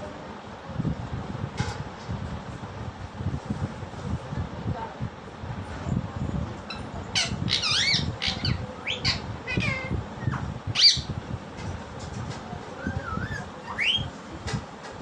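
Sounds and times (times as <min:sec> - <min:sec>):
low background rumble: 0:00.0 - 0:15.0
parakeet squawking and calling: 0:06.7 - 0:11.2, 0:12.8 - 0:14.1
parakeet wavering whistle: 0:07.2 - 0:11.1, 0:12.8 - 0:14.1.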